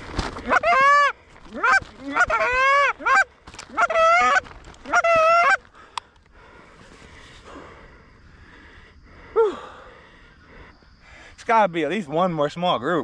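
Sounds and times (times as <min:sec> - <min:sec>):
goose call honks: 0:00.4 - 0:05.6.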